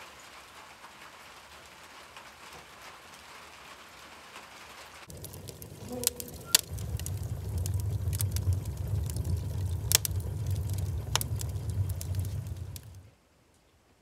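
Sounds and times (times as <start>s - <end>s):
rain on a tin roof: 0.0s - 14.0s.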